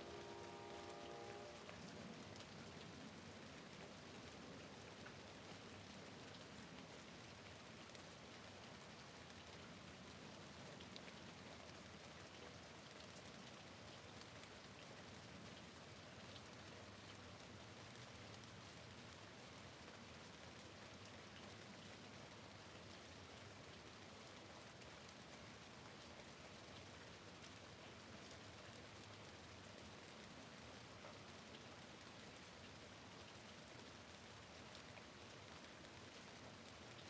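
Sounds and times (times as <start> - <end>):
faint rain hiss: 0.0 - 37.0.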